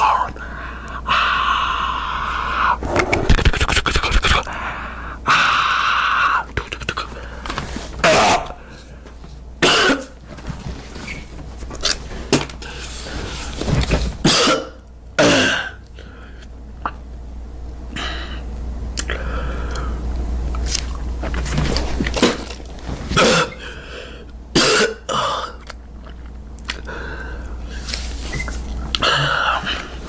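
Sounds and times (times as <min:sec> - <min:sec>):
man coughing and clearing throat: 0:09.6 - 0:10.2, 0:14.2 - 0:15.8, 0:23.1 - 0:23.6, 0:24.5 - 0:25.6.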